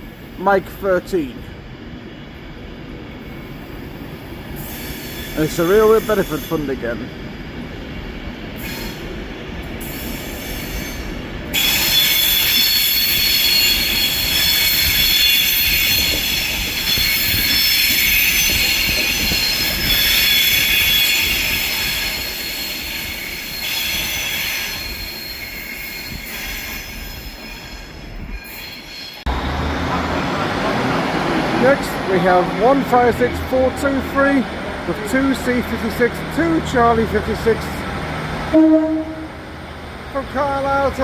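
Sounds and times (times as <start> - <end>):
train wheels rumbling on rails: 0.0 - 41.0
high wheel squeal: 4.6 - 6.8, 9.8 - 29.5.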